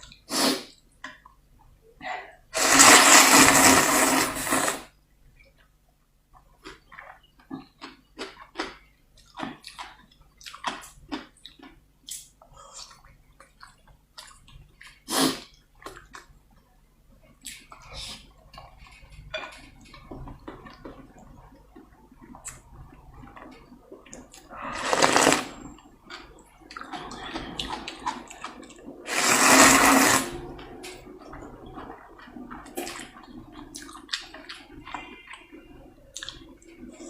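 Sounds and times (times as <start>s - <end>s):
slurping noodle soup: 0.2s - 0.8s, 2.6s - 4.9s, 24.4s - 25.8s, 26.7s - 34.1s
wet chewing and lip smacking: 31.3s - 35.5s.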